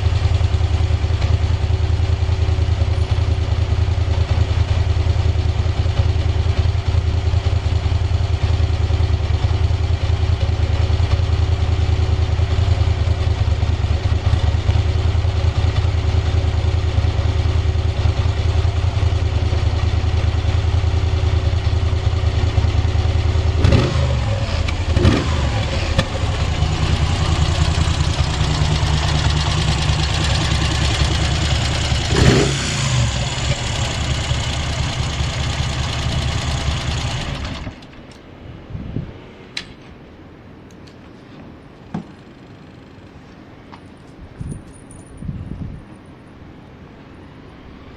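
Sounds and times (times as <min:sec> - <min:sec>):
motorcycle engine idling: 0:00.0 - 0:38.0.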